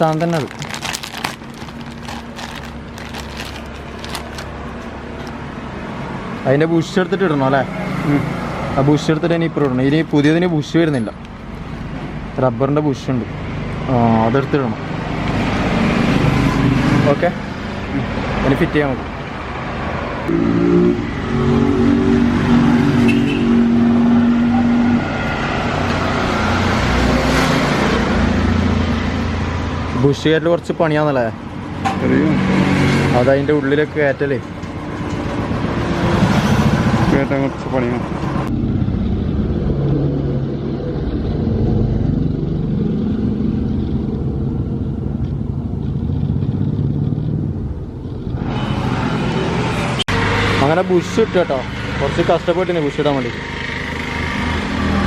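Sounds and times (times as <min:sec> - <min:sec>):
motorcycle engine running: 0:34.5 - 0:48.5.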